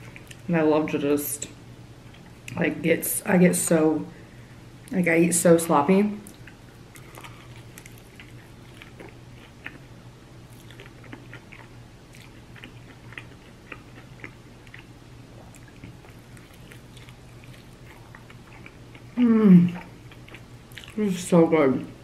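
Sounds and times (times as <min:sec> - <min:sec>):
steady low hum: 0:00.0 - 0:22.0
sloppy chewing: 0:06.2 - 0:09.9, 0:10.5 - 0:21.0.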